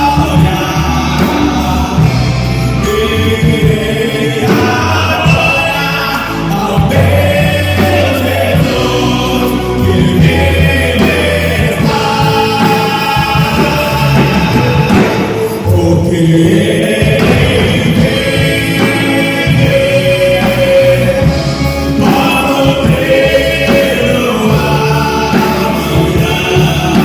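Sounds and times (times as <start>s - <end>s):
gospel band playing: 0.0s - 27.0s
steady bass line: 0.0s - 27.0s
voices singing together: 0.0s - 27.0s.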